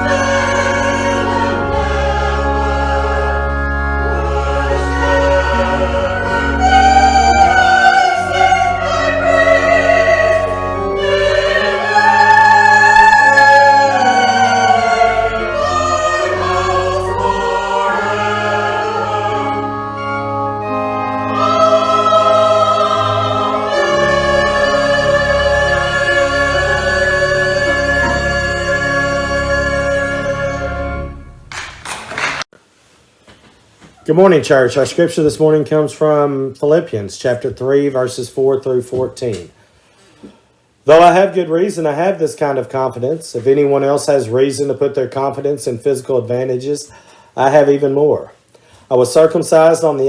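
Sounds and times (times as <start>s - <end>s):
singing with vibrato: 0.0s - 19.8s, 21.3s - 31.1s
instrumental accompaniment: 0.0s - 32.4s.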